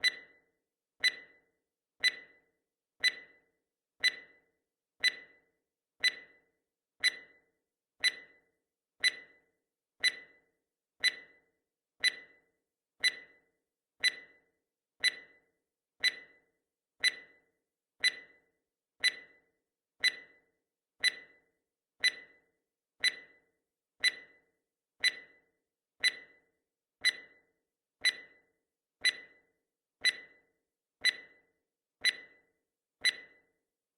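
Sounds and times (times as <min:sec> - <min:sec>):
timer ticking: 0:01.0 - 0:01.4, 0:02.0 - 0:02.4, 0:03.0 - 0:03.4, 0:04.0 - 0:04.4, 0:05.0 - 0:05.4, 0:06.0 - 0:06.4, 0:07.0 - 0:07.3, 0:08.0 - 0:08.4, 0:09.0 - 0:09.4, 0:10.0 - 0:10.4, 0:11.0 - 0:11.4, 0:12.0 - 0:12.4, 0:13.0 - 0:13.4, 0:14.0 - 0:14.4, 0:15.0 - 0:15.4, 0:16.0 - 0:16.4, 0:17.0 - 0:17.4, 0:18.0 - 0:18.4, 0:19.0 - 0:19.4, 0:20.0 - 0:20.3, 0:22.0 - 0:22.3, 0:23.0 - 0:23.3, 0:24.0 - 0:24.3, 0:25.0 - 0:25.4, 0:26.0 - 0:26.4, 0:28.0 - 0:28.3, 0:29.0 - 0:29.4, 0:30.0 - 0:30.4, 0:31.0 - 0:31.4, 0:32.0 - 0:32.4, 0:33.0 - 0:33.4.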